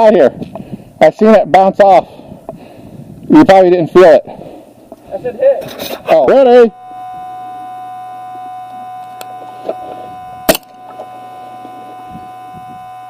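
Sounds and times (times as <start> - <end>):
electric hum with high whine: 0.0 - 13.0
sharp crack: 10.5 - 10.8.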